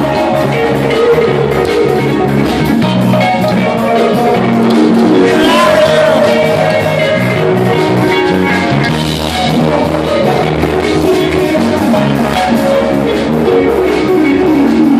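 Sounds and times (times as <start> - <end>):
rock band drums and guitar: 0.0 - 14.9
person singing: 3.7 - 8.3.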